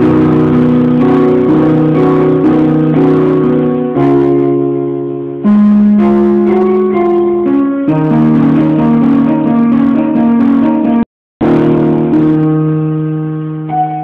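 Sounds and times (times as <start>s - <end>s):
electronic keyboard piano chords: 0.0s - 14.0s.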